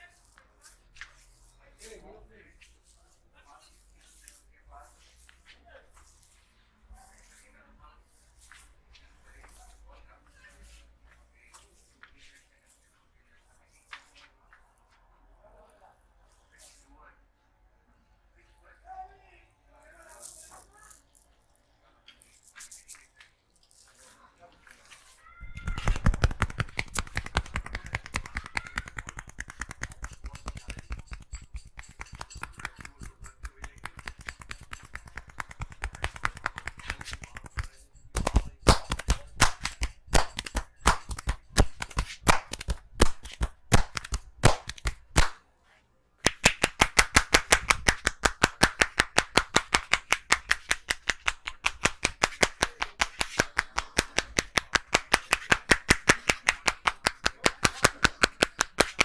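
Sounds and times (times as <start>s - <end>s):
hands slapping head and shoulders: 25.4s - 45.4s, 46.2s - 59.0s.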